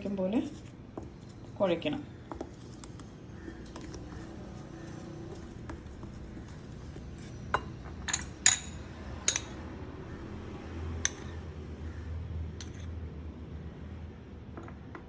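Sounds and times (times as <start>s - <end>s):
dough kneaded by hand: 0.0s - 7.5s
clinks and taps against bowl: 7.5s - 9.6s, 11.0s - 11.4s.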